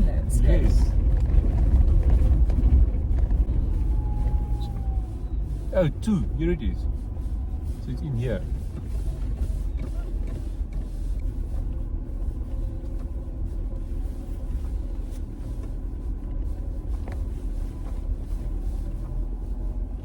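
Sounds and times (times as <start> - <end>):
vehicle rumbling on gravel: 0.0 - 20.0.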